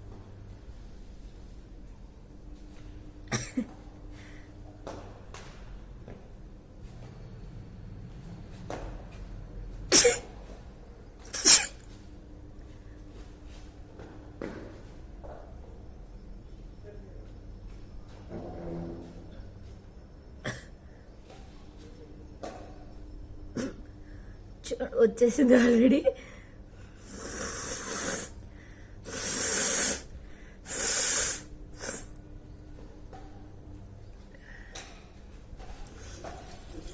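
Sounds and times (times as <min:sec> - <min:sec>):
breathy burst through the nose: 0:09.9 - 0:10.2, 0:11.3 - 0:11.7, 0:27.0 - 0:28.4, 0:29.0 - 0:32.1.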